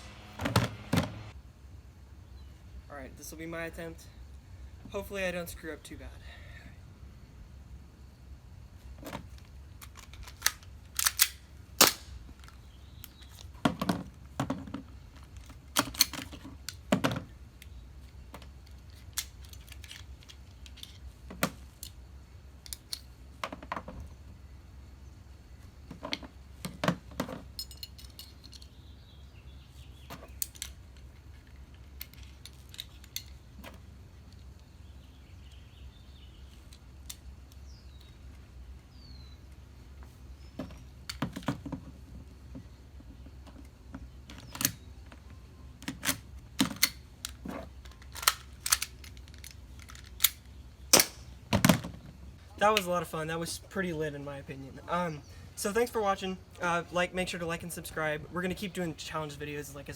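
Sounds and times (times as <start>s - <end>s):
pistol parts clicking and snapping: 9.8s - 13.5s, 15.2s - 16.8s, 18.4s - 21.0s, 22.6s - 23.1s, 27.6s - 28.8s, 30.3s - 33.4s, 45.8s - 51.3s.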